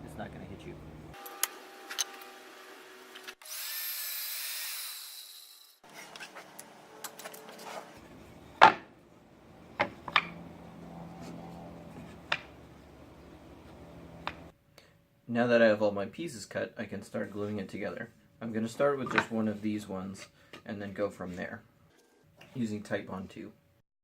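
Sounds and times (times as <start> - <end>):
table saw cutting plywood: 1.2 - 8.1
sharp wooden knocks: 8.6 - 8.9, 12.3 - 12.5.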